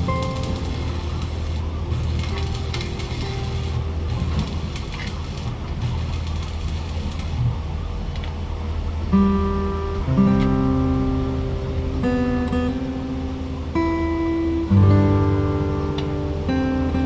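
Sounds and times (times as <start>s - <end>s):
acoustic guitar strum: 0.0s - 4.6s, 9.1s - 17.0s
machinery humming: 0.0s - 17.0s.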